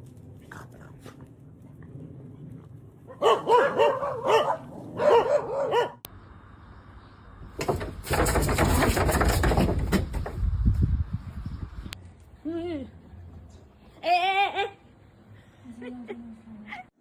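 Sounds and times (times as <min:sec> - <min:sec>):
dog barking: 0:03.1 - 0:06.1
loud steady rustling: 0:07.5 - 0:10.6.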